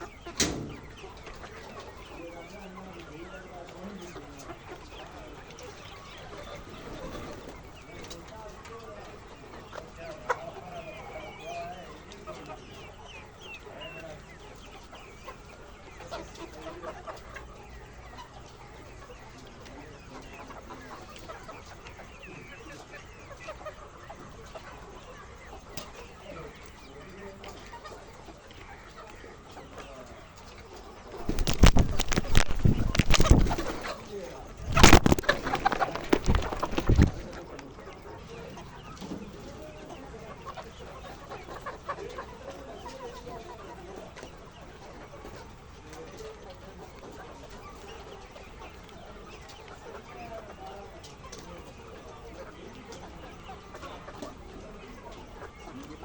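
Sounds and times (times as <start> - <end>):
hens clucking and squawking: 0.0 - 56.0.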